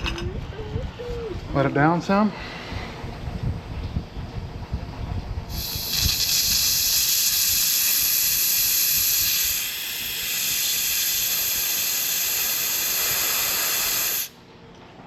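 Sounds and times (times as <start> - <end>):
air jack hissing: 5.5 - 14.4.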